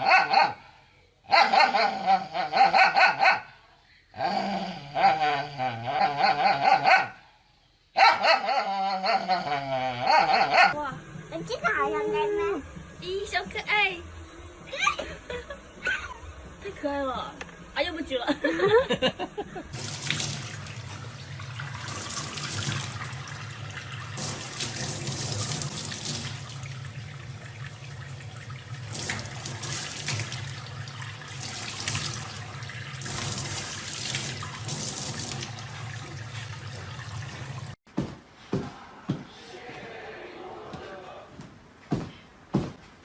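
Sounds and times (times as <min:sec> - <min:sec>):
running water splashing: 0:10.9 - 0:37.8.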